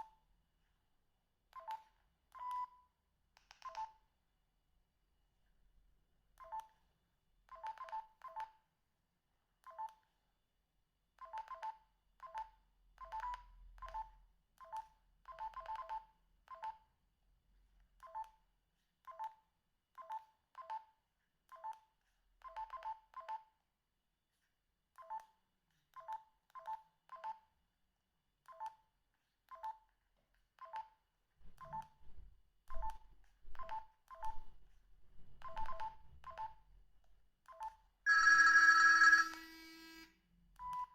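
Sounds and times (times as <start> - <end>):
phone keypad beeps: 1.6 - 2.8, 7.5 - 8.5, 13.0 - 16.8, 35.4 - 36.6, 37.5 - 39.5.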